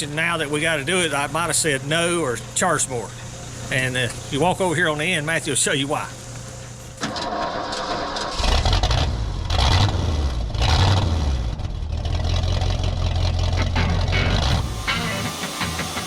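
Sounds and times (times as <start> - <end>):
engine revving: 7.3 - 16.0.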